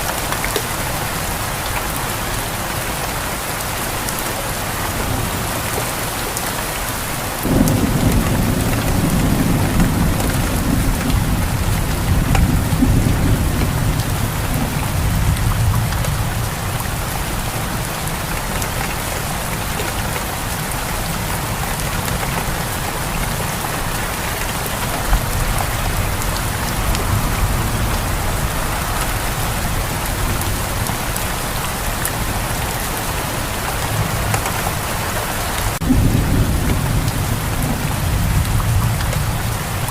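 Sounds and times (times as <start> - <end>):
steady rain falling: 0.0 - 39.9
rolling thunder rumble: 7.4 - 18.2, 19.3 - 39.9.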